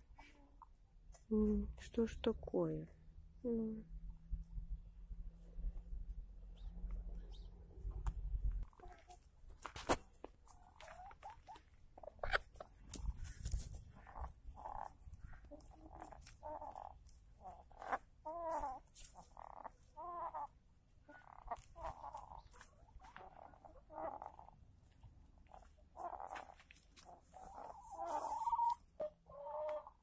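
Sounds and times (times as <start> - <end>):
hens clucking softly: 10.4 - 13.2, 13.8 - 30.0.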